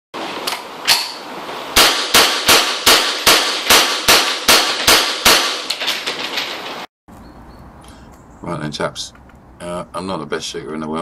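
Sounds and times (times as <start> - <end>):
rifle shots in rapid succession: 1.8 - 5.8.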